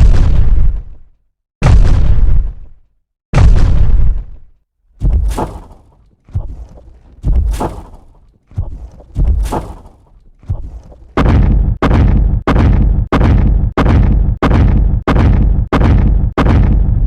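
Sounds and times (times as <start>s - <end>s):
cartoon dinosaur footstep thuds: 5.0s - 17.0s.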